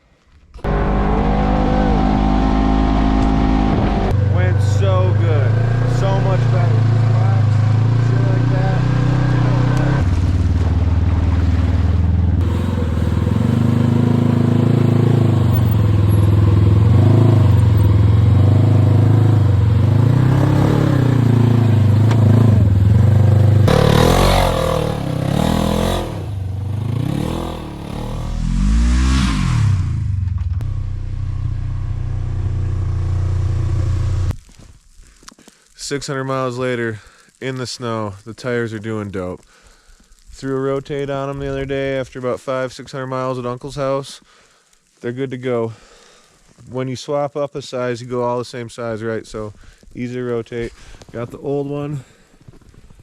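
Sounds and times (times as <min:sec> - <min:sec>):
off-road vehicle engine revving: 0:00.6 - 0:34.3.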